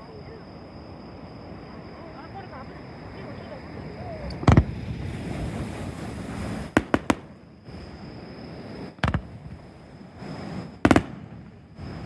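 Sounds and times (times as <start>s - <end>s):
fireworks bangs: 4.3s - 7.4s, 8.9s - 12.0s.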